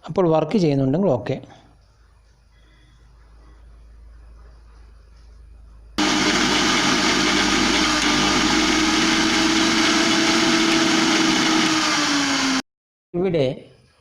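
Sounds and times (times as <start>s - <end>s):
mixer grinder motor whining: 6.0s - 12.6s.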